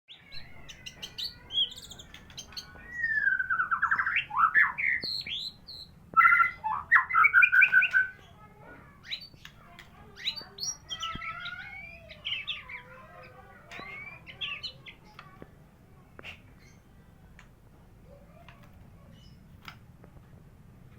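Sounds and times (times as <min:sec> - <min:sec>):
bird singing whistled phrases: 0:01.2 - 0:08.2.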